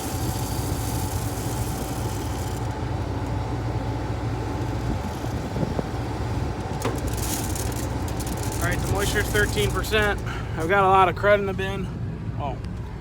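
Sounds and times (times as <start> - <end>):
machine hiss: 0.0 - 4.0
combine harvester humming: 0.0 - 13.0.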